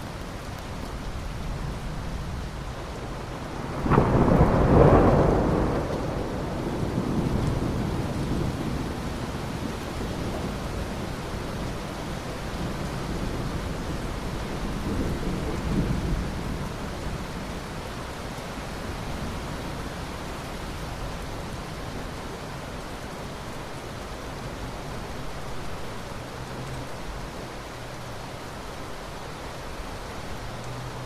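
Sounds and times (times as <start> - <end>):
steady rain: 0.0 - 31.0
rolling thunder: 3.6 - 11.0.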